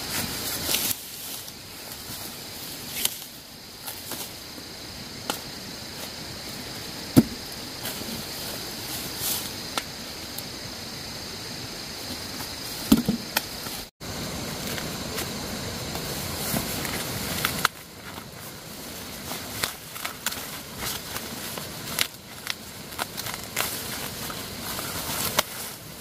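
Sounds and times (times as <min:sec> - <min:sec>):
steady hiss: 0:00.0 - 0:26.0.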